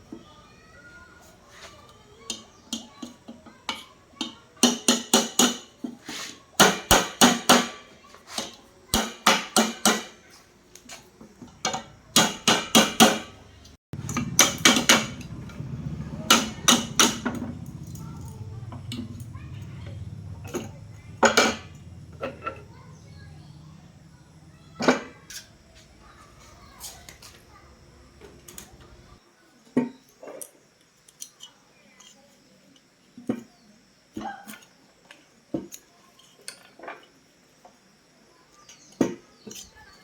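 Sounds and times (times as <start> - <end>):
hammer striking metal: 14.0 - 15.3, 16.2 - 17.5
steady low hum: 14.0 - 29.2.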